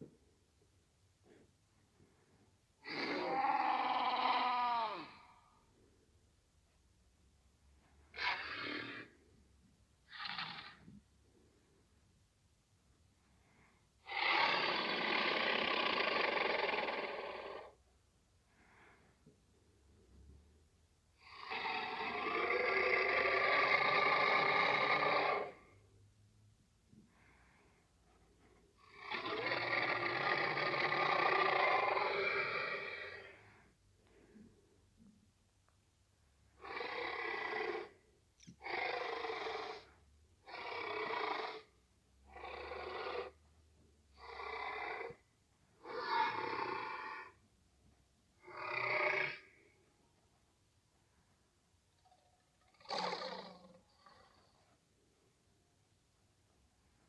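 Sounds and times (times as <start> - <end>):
dinosaur roar sound effect: 2.8 - 5.4, 8.1 - 9.2, 14.0 - 17.8, 21.2 - 25.8, 28.8 - 33.5, 36.6 - 38.0, 38.6 - 41.7, 42.3 - 43.4, 44.2 - 45.2, 45.8 - 47.4, 48.4 - 49.6, 52.0 - 54.7
faint breathing: 13.2 - 14.1, 18.4 - 20.4, 26.9 - 28.8, 33.1 - 35.3.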